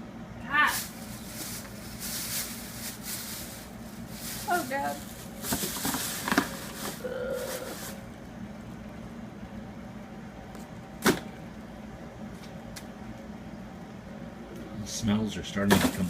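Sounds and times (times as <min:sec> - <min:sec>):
steady low hum: 0:00.0 - 0:16.0
food packaging rustling: 0:00.8 - 0:08.0.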